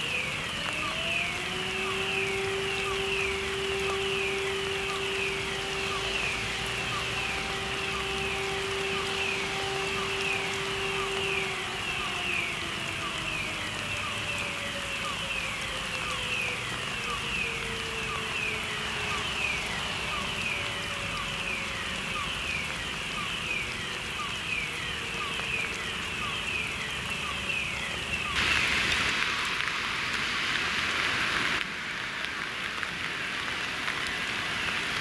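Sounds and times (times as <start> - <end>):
electronic fire alarm sweeping: 0.0 - 28.7
distant motor siren winding down: 0.0 - 30.2
loud steady hiss: 1.0 - 13.5, 28.0 - 35.0.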